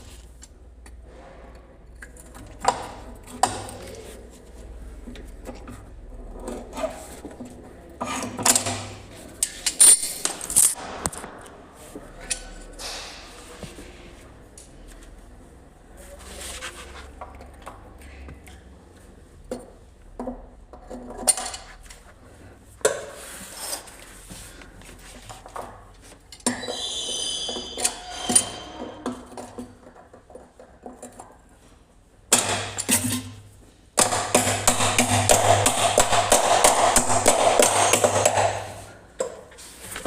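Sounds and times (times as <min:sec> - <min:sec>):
high metallic squeal: 0:26.6 - 0:29.0.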